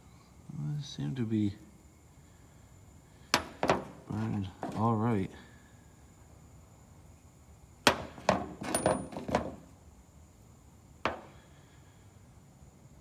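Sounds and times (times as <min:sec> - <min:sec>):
hand tools clinking: 0:07.9 - 0:09.6.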